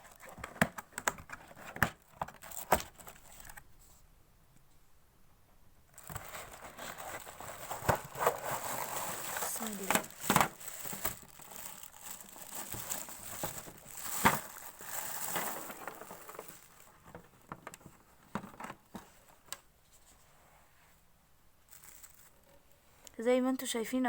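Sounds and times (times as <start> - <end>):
packaging crinkling and rustling: 0.0 - 3.7, 5.9 - 19.7, 21.7 - 22.4.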